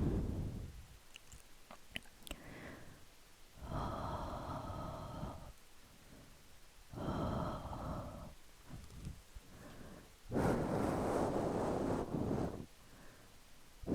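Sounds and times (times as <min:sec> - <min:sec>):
slow soft breathing: 0:00.0 - 0:00.8, 0:02.3 - 0:13.9
faint clicks: 0:08.7 - 0:09.8.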